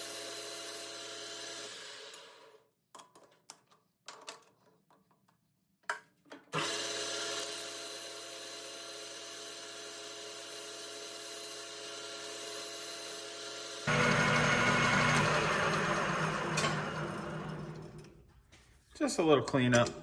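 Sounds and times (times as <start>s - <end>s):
metal lathe humming: 13.6s - 18.1s.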